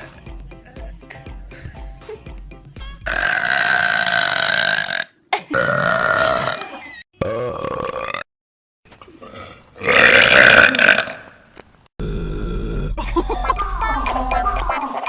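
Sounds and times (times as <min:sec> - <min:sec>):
music: 0:00.0 - 0:03.3, 0:13.0 - 0:15.0
person burping: 0:03.1 - 0:08.3, 0:09.1 - 0:11.4, 0:12.0 - 0:13.1.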